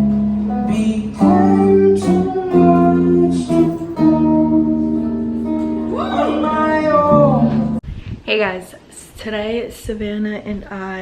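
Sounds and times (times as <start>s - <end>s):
strummed acoustic guitar chords: 0.0s - 7.8s.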